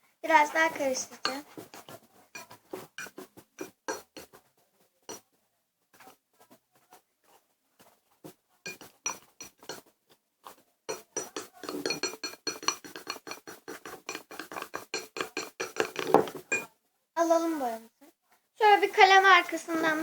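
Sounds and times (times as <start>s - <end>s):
spoon clinking against bowl: 1.2s - 4.3s, 8.7s - 9.8s, 10.9s - 16.7s.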